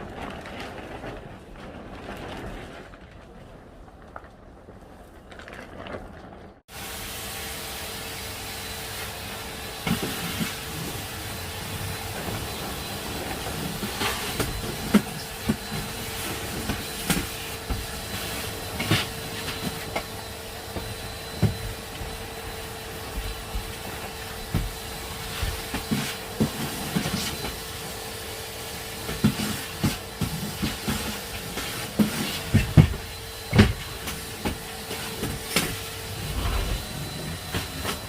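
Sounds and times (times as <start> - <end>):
steady rushing noise with hum: 36.0 - 37.5.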